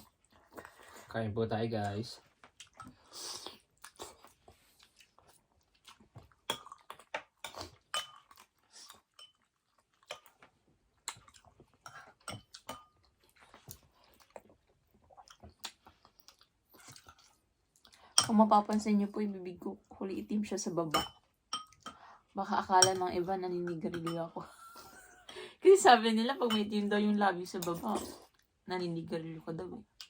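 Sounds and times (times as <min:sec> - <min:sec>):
chewing and mouth noises: 0:01.9 - 0:18.2.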